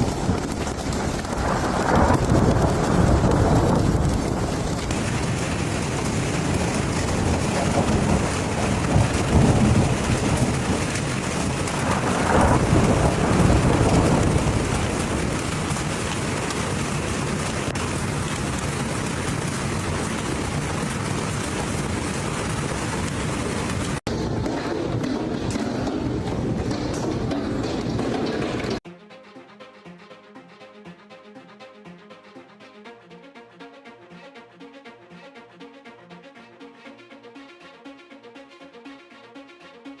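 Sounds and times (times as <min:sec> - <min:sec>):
hail and heavy rain pelting: 0:00.0 - 0:28.8
low thunder rumble: 0:00.0 - 0:28.8.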